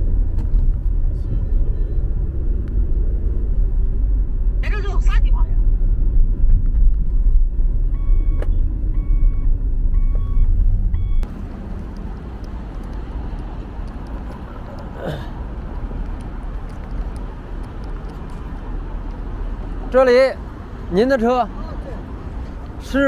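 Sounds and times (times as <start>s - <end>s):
car rumble from inside: 0.0s - 20.9s
road and traffic noise: 0.0s - 23.0s
electronic warning beep: 7.9s - 11.3s.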